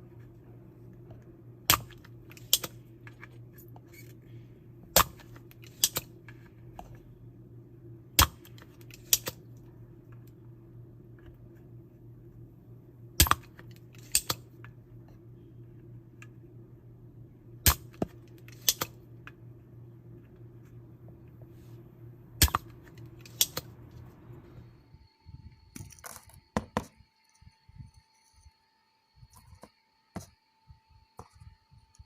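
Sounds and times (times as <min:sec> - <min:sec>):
steady low hum: 0:00.0 - 0:32.0
desoldering pump clicks: 0:01.7 - 0:02.8.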